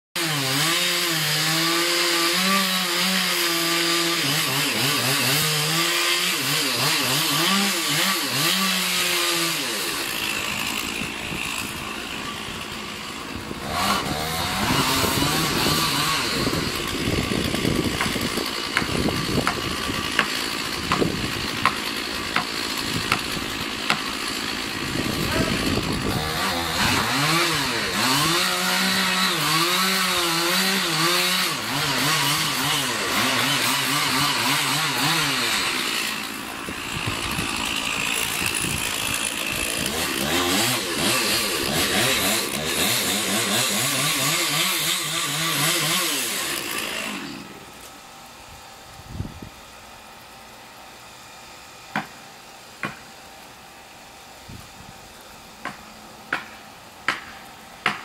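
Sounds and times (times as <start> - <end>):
small engine running: 9.5 - 28.7.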